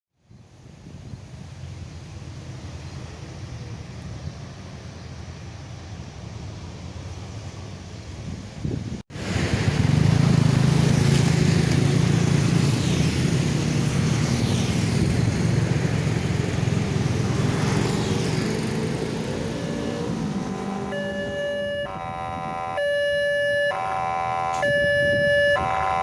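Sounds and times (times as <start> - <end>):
low engine hum: 0.3 - 22.7
motorcycles and cars passing: 6.0 - 22.8.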